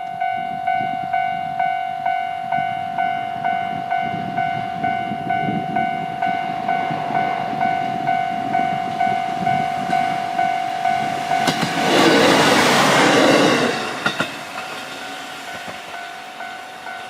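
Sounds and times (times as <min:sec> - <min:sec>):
train wheel and rail noise: 0:00.0 - 0:17.0.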